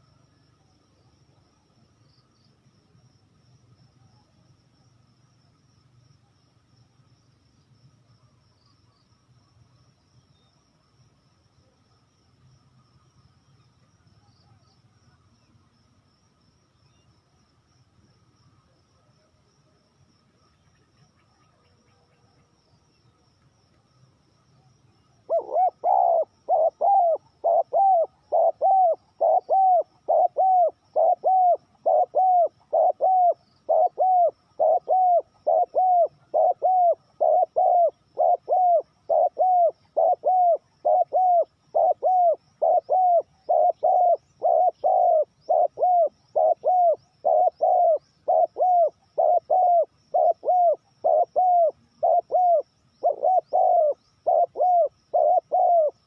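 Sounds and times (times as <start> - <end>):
dove cooing: 25.2 - 56.0.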